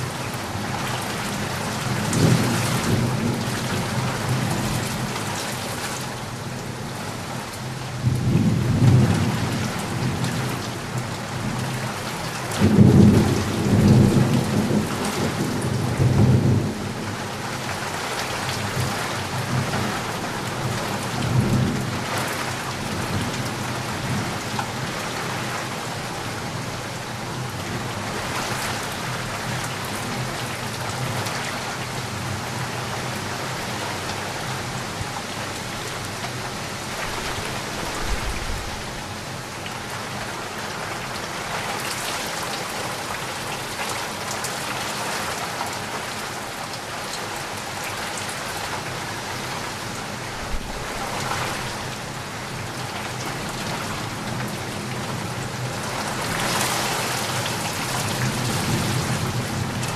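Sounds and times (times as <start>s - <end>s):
heavy rain falling: 0.0s - 59.9s
thunder rumbling: 36.9s - 39.4s, 50.4s - 52.2s.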